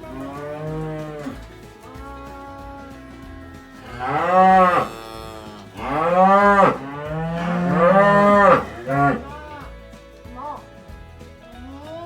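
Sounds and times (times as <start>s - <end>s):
cows mooing: 0.0s - 1.5s, 3.7s - 9.4s.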